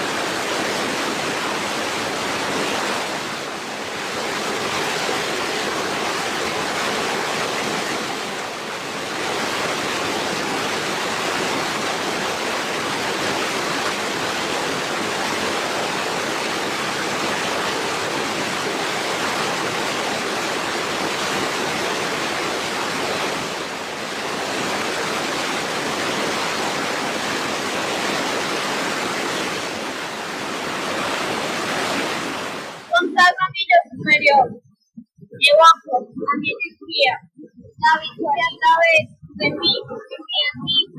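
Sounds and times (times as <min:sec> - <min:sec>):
water rushing: 0:00.0 - 0:40.9.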